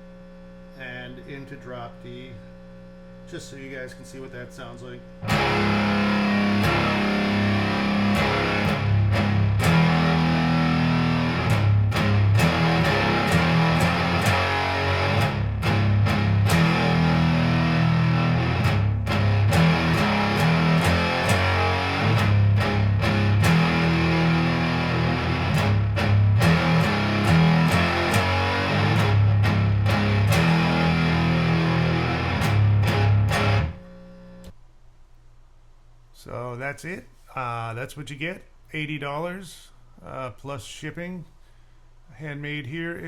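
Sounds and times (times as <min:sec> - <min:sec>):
fuzz-distorted electric guitar riffing: 0:05.2 - 0:34.5.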